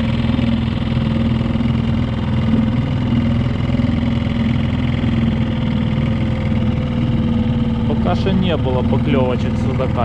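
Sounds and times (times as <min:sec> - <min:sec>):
outboard motor running: 0:00.0 - 0:10.0.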